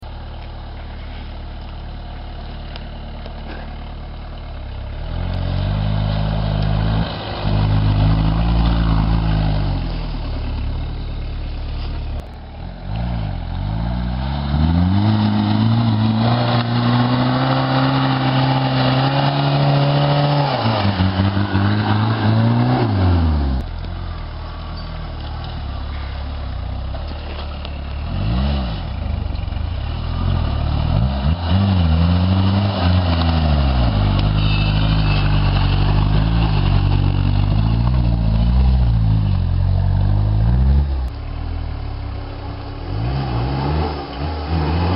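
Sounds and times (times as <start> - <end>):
car engine revving: 2.2 - 44.9.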